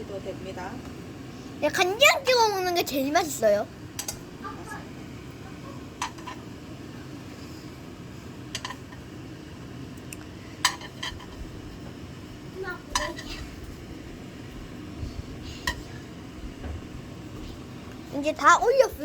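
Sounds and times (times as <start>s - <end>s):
steady low hum: 0.0s - 19.0s
utensil clinking against a plate: 6.0s - 6.5s, 8.5s - 9.1s, 10.6s - 11.5s, 12.9s - 13.6s.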